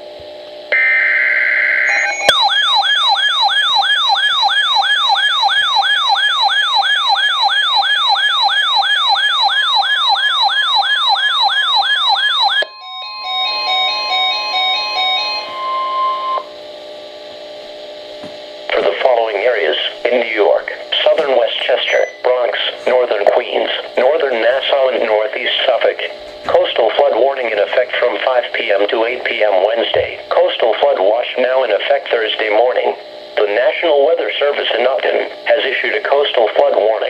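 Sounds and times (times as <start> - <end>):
electronic siren-like alert signal: 0.7 - 16.5
steady tone with electronic beeps: 0.7 - 16.5, 18.8 - 27.1.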